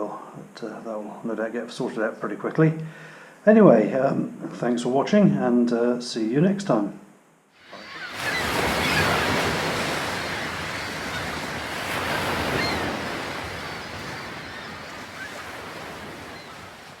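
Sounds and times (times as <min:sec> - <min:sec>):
sea waves breaking on beach: 0:07.6 - 0:17.0.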